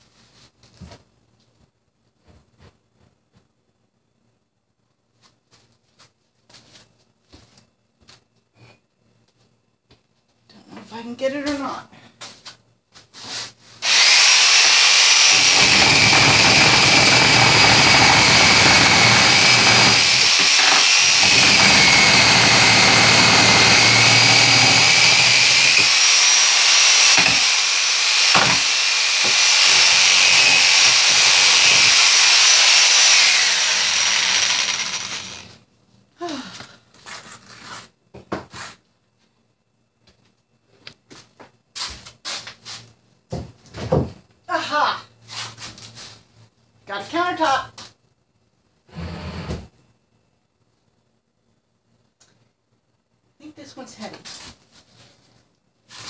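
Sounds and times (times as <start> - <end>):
electric power saw cutting wood: 13.8 - 35.6.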